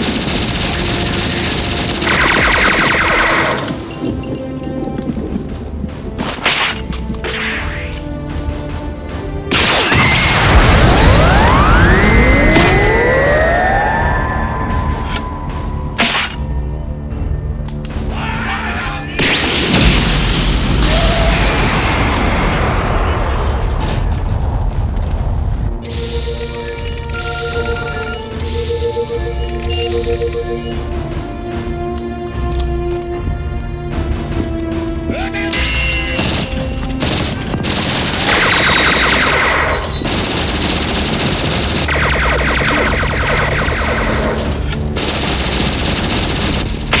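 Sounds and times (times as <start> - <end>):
rapid machine-gun fire effect: 0.0 - 3.9, 36.2 - 47.0
music: 0.0 - 47.0
explosion boom with rumble: 10.0 - 12.8
rising whistle: 11.2 - 15.7.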